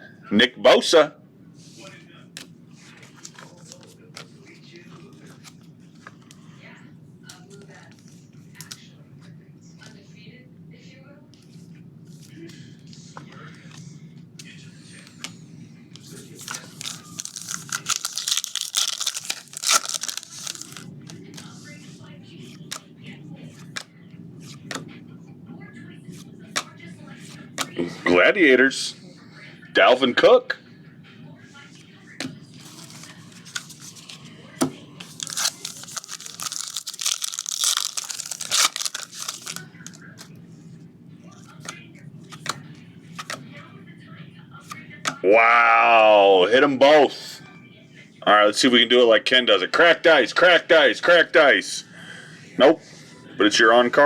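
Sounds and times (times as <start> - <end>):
wrapper tearing and crinkling: 16.4 - 20.9, 35.1 - 40.0.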